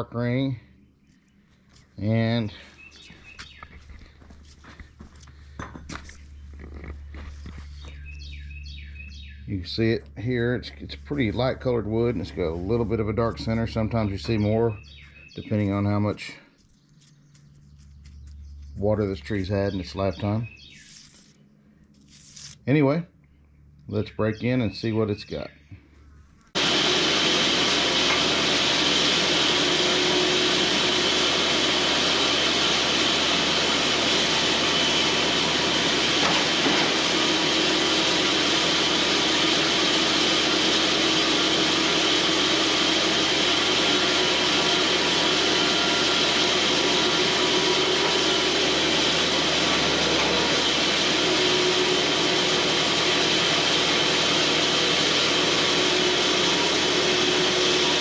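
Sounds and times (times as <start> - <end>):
band sawmill cutting log: 5.3 - 16.3, 17.8 - 20.7, 26.6 - 58.0.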